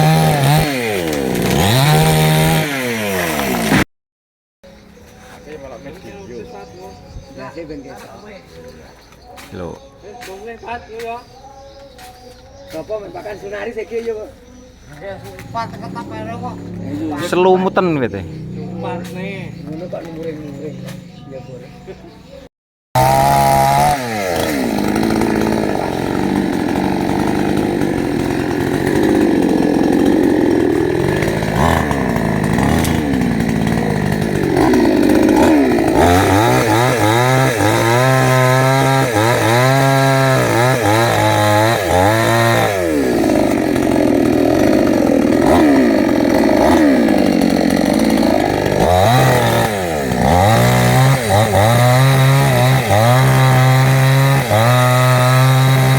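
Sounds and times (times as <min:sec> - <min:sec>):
chainsaw cutting wood: 0:00.0 - 0:03.9, 0:23.0 - 0:55.9.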